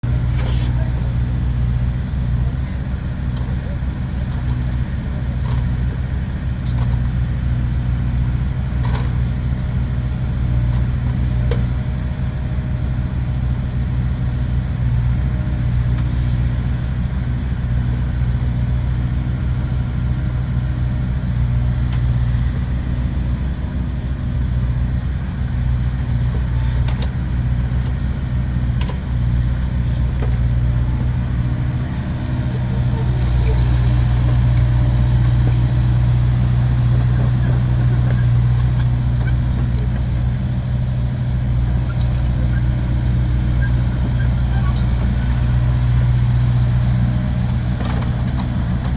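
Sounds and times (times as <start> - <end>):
vehicle engine humming: 0.0 - 48.9.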